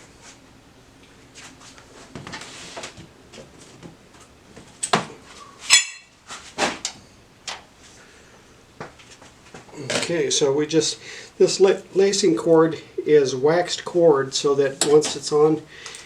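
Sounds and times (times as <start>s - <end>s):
high metallic ring: 5.7s - 6.2s.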